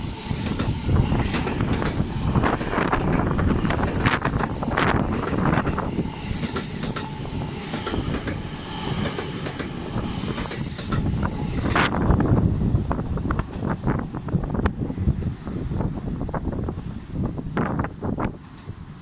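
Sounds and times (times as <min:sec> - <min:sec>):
train rumbling and clattering: 0:00.0 - 0:19.0
train wheels squealing: 0:01.8 - 0:04.7, 0:05.4 - 0:11.8.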